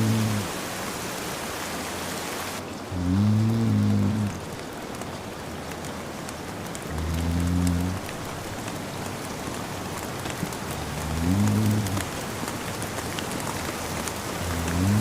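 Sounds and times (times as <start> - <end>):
man snoring: 0.0 - 0.5, 3.0 - 4.4, 11.0 - 12.0, 14.4 - 15.0
steady rain falling: 0.0 - 15.0.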